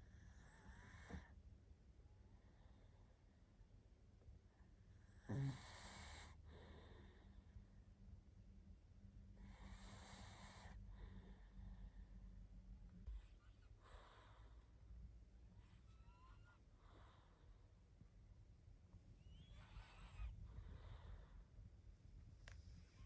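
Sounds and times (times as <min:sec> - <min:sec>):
dog snoring: 0:00.0 - 0:01.4, 0:05.0 - 0:07.4, 0:09.4 - 0:12.0, 0:13.1 - 0:14.7, 0:15.6 - 0:17.6, 0:19.3 - 0:21.4
faint low hum: 0:00.0 - 0:23.0.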